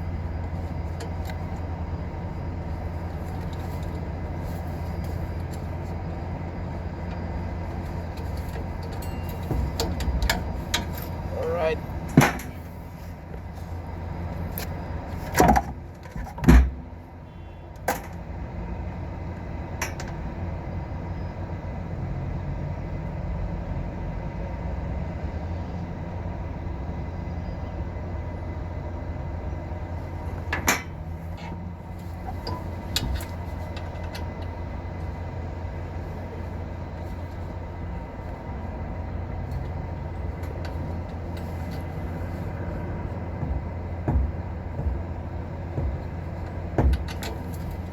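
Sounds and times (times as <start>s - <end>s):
low machine hum: 0.0s - 47.9s
sharp knocks and clicks: 42.5s - 47.9s.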